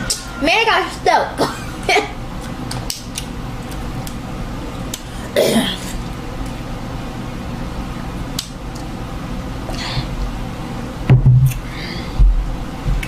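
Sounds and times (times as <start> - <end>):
eating and food handling: 2.4 - 6.7
dull low thump: 11.1 - 11.5.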